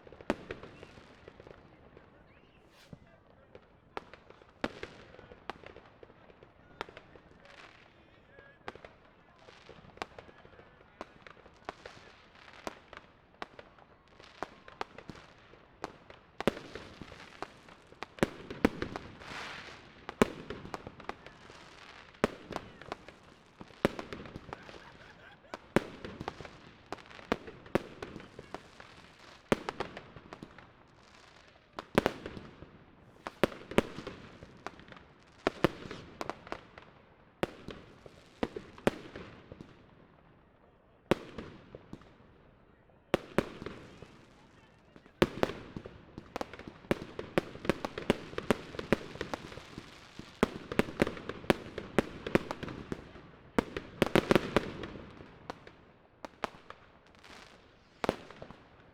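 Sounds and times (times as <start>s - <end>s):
firework crackling: 0.0s - 3.2s, 8.7s - 36.9s, 43.2s - 58.8s
fireworks bangs: 8.7s - 39.7s.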